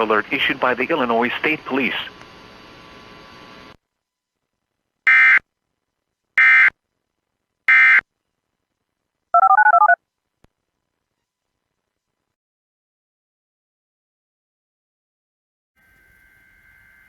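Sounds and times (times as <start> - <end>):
faint static: 0.0 - 12.4
data tone bursts: 9.4 - 10.0.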